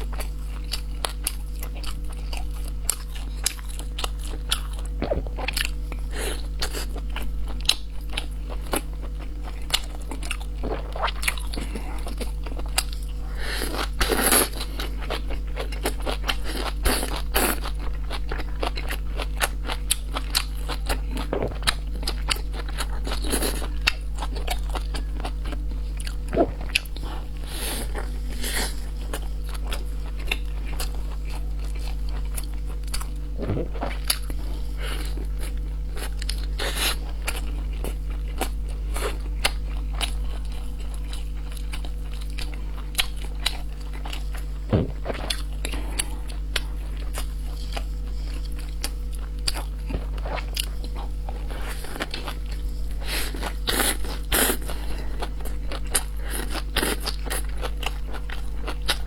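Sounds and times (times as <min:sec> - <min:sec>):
steady low hum: 0:00.0 - 0:59.0
person biting and chewing: 0:15.6 - 0:55.0.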